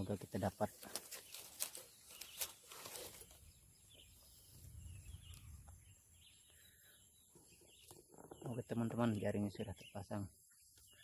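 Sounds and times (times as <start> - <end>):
faint outdoor ambience: 0.0 - 11.0
brief rustles: 0.8 - 3.4.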